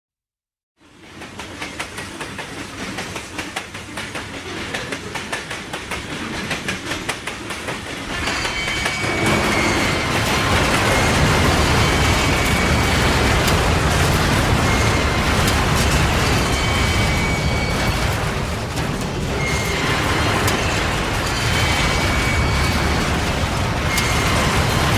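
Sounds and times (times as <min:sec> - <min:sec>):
train rumble: 0:00.8 - 0:24.9
train wheels clacking: 0:00.8 - 0:24.9
high steady squeal: 0:08.1 - 0:18.6, 0:19.2 - 0:24.9.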